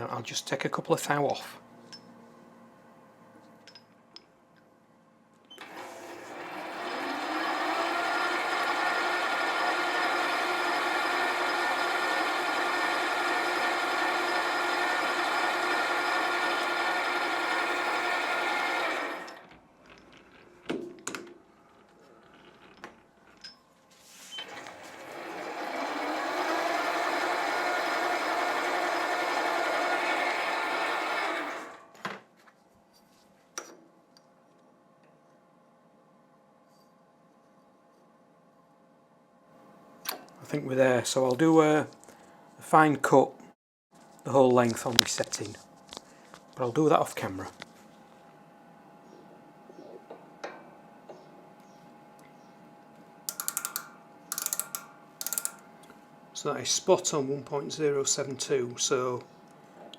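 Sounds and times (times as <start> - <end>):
lathe clicks: 5.6 - 19.6, 24.4 - 31.9, 53.2 - 56.0
lathe running: 5.6 - 19.6, 24.2 - 31.9, 53.2 - 55.8.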